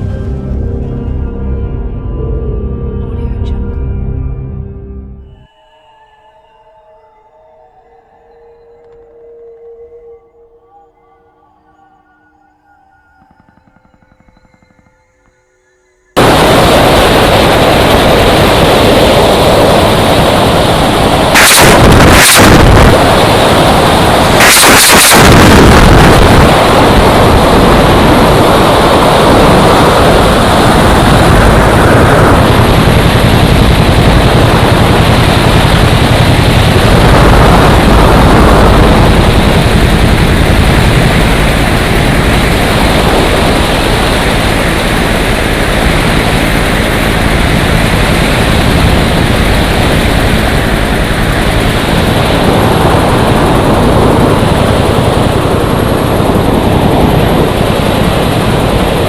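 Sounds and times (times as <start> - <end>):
helicopter rotor and engine: 12.3 - 59.0.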